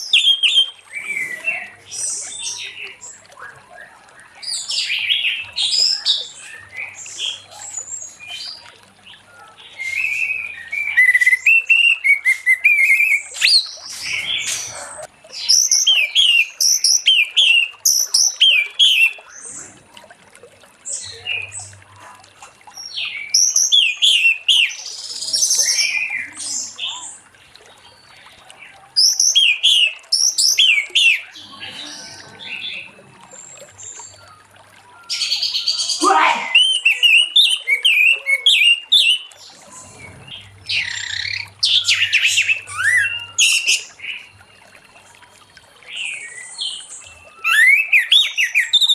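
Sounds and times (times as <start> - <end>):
thrush singing whistled notes: 9.7 - 19.2, 33.8 - 44.5, 46.1 - 48.9.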